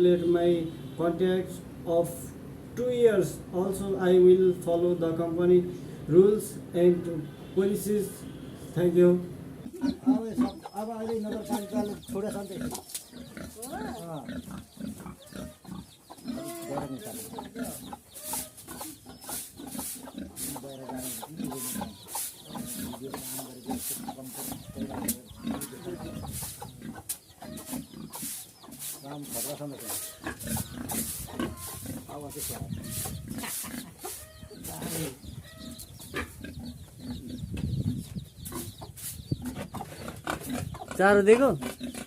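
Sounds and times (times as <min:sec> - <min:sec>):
farm animals calling: 0:00.0 - 0:42.0
higher animal calls: 0:09.6 - 0:20.5, 0:21.3 - 0:23.6, 0:29.6 - 0:36.8.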